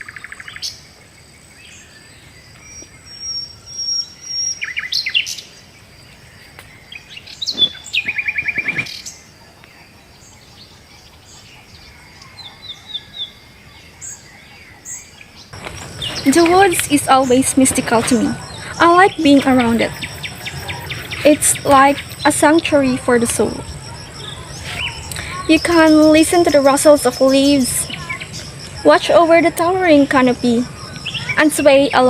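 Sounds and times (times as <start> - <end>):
birds singing and calling: 0.0 - 32.0
bird trill: 11.0 - 32.0.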